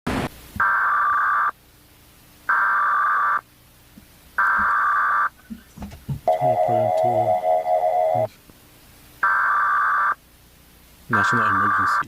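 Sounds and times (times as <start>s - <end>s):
digital data tone bursts: 11.1s - 12.0s.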